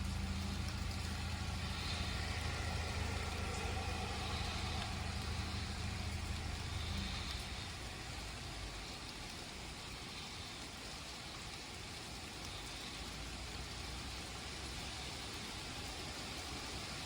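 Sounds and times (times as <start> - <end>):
low thunder rumble: 0.0 - 8.8
rain hissing: 0.0 - 17.0.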